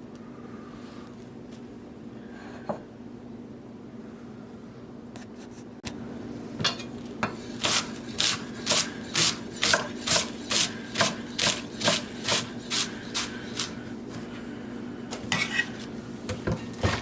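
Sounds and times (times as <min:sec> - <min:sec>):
knife slicing vegetables on board: 0:07.2 - 0:13.8.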